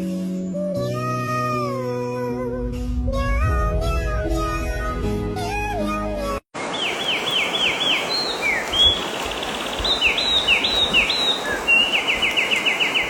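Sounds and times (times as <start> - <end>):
outdoor hiss: 6.6 - 13.0
songbirds chirping: 6.6 - 13.0.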